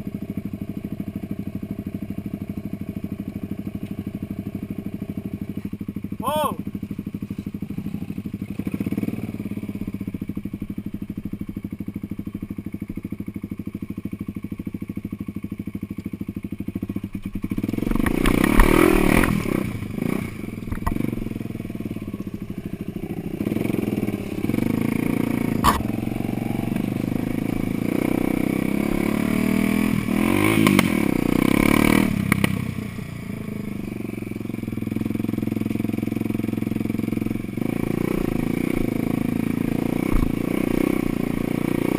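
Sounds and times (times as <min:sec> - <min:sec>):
off-road vehicle engine running: 0:00.0 - 0:41.9
sharp knock from vehicle: 0:40.1 - 0:40.4.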